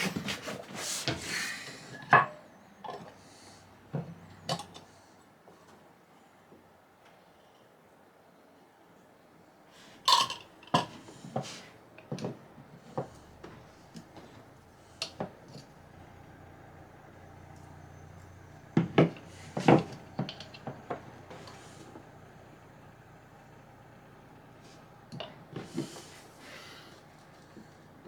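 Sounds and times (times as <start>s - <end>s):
hard objects knocking and clattering: 18.7s - 21.5s.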